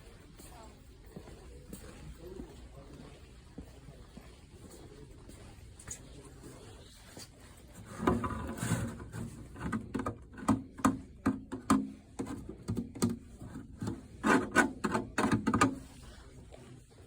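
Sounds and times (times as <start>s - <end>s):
handling knocks and rubbing: 7.8s - 16.0s.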